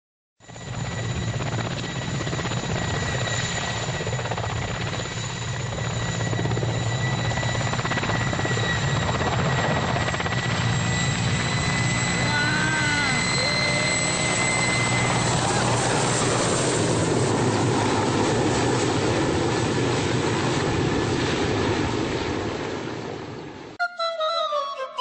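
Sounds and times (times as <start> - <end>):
helicopter rotor and engines: 0.4 - 23.8
high engine whine: 0.5 - 18.9.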